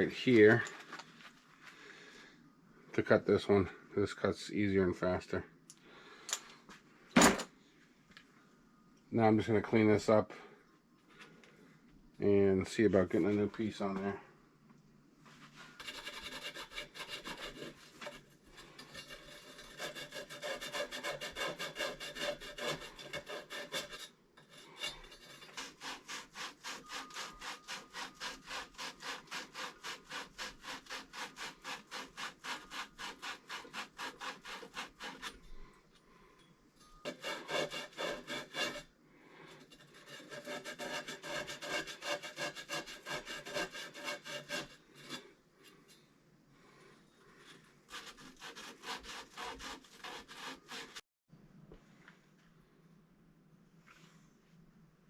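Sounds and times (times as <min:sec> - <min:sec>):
abrasive scrubbing copper pipe: 0:15.5 - 0:35.4, 0:37.0 - 0:45.9, 0:46.6 - 0:51.0.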